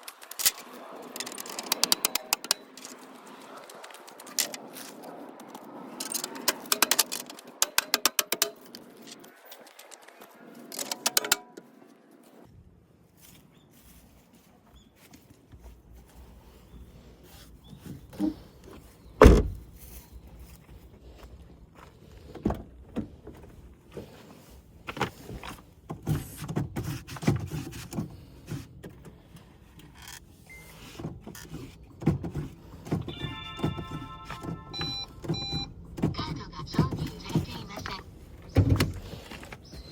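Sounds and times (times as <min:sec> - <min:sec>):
hand tools clicking: 0:00.0 - 0:04.7, 0:06.0 - 0:09.2.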